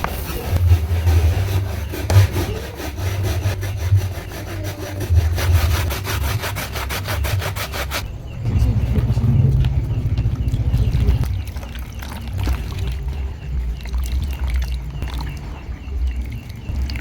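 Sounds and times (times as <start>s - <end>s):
rhythmic scraping strokes: 0.0s - 11.3s
steady low rumble: 8.0s - 17.0s.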